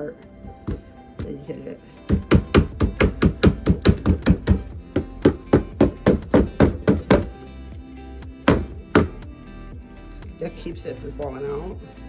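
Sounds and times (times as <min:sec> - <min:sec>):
portafilter knocking: 0:02.1 - 0:07.3.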